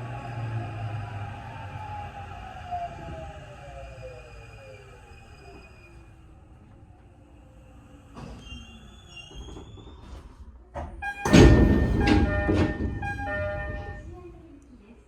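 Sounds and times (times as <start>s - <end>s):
train doors banging open: 10.8s - 14.3s
train motor whine braking: 11.0s - 14.2s
three-tone door chime: 11.0s - 14.3s.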